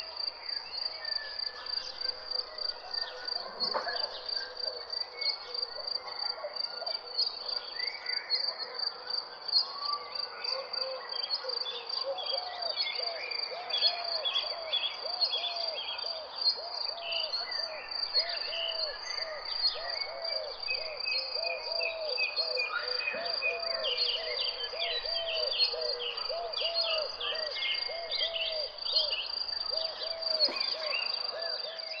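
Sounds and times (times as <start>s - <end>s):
birds chirping: 22.6s - 31.6s.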